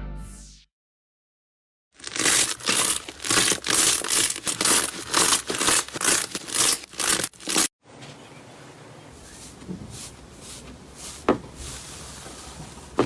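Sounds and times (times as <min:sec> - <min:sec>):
slime squishing and crackling: 0:02.0 - 0:07.7.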